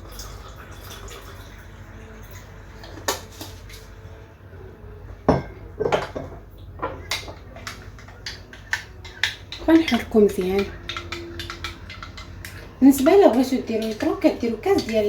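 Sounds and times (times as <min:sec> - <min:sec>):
spoon clinking against glass: 0:05.3 - 0:15.0.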